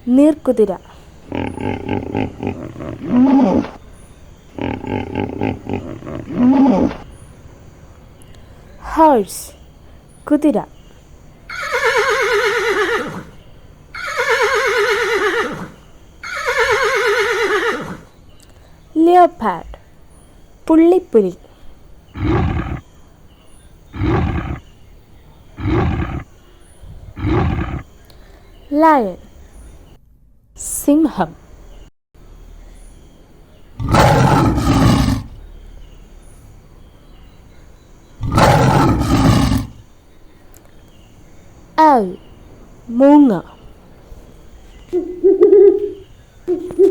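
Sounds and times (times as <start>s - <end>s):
horse whinnying: 1.3s - 3.8s, 4.6s - 7.0s, 11.5s - 13.3s, 14.0s - 18.0s, 25.6s - 26.3s, 27.2s - 27.8s
lion roaring: 1.3s - 3.8s, 4.5s - 7.2s, 22.2s - 22.9s, 23.9s - 24.7s, 25.6s - 26.3s, 26.9s - 27.9s, 33.8s - 35.4s, 38.2s - 39.8s.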